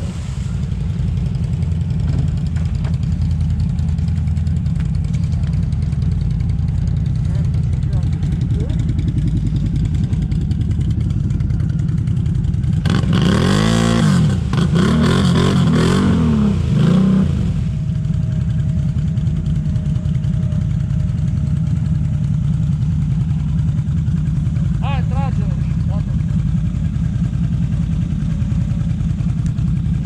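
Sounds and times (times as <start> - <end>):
engine revving: 0.0 - 2.7, 12.6 - 17.9.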